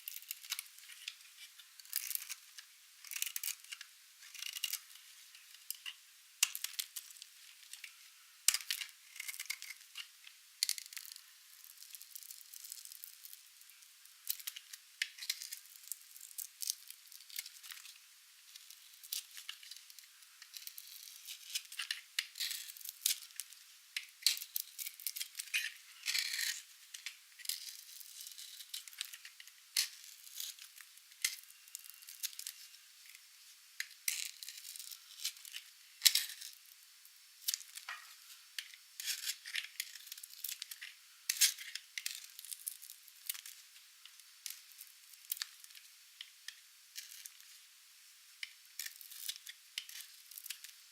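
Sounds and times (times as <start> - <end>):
knife cracking through dry soap: 8.5 - 11.1.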